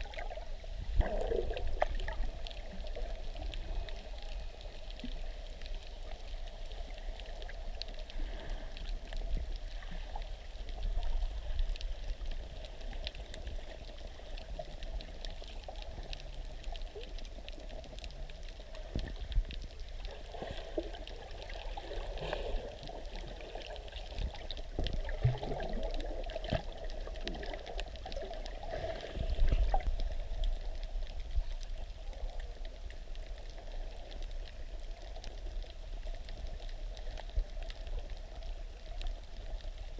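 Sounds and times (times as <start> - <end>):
bubbling: 0.0 - 39.9
muffled underwater wash: 0.0 - 39.9
underwater clicks: 22.8 - 31.7.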